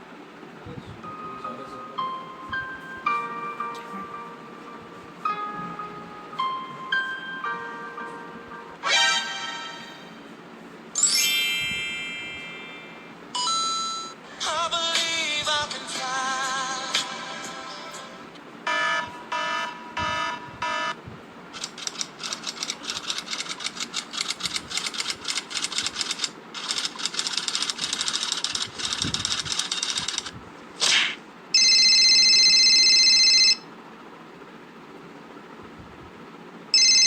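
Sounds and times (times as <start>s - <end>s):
electronic buzzer tone: 18.7s - 21.0s
rapid clicking: 21.6s - 30.3s.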